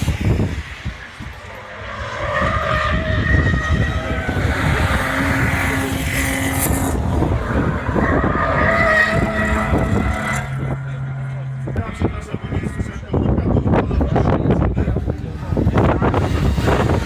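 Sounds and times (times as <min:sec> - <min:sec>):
racing car engines at high revs: 0:00.0 - 0:17.0.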